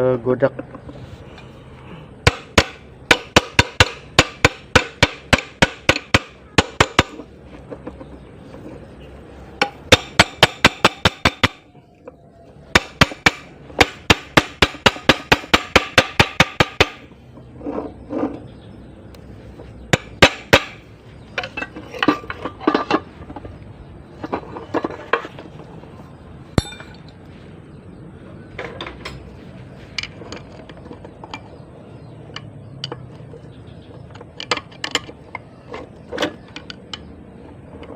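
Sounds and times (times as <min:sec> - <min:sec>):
hammer striking metal: 0:02.2 - 0:07.2, 0:26.6 - 0:27.1.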